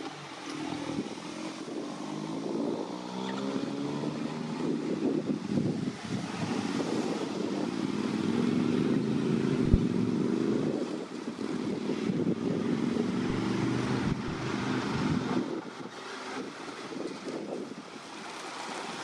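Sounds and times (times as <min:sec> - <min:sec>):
vehicle engine running close by: 0:00.0 - 0:17.6
traffic noise: 0:00.0 - 0:19.0.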